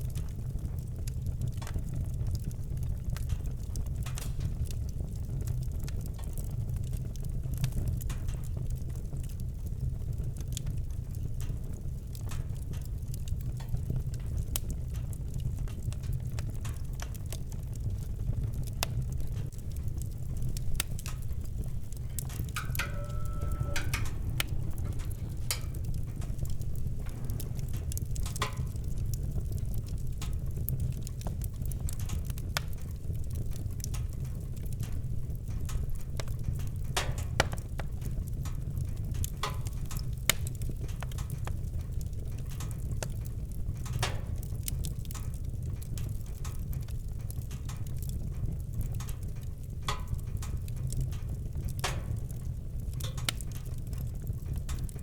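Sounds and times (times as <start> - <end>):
campfire crackling: 0.0 - 55.0
steady low rumble: 17.8 - 34.3.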